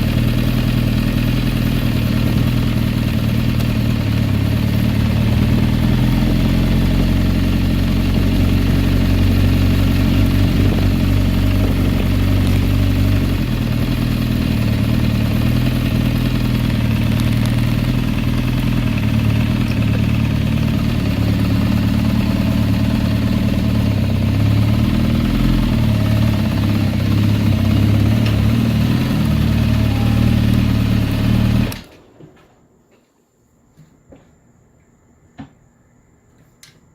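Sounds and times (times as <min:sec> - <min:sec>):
motorcycle engine ticking and rattling: 0:00.0 - 0:32.0.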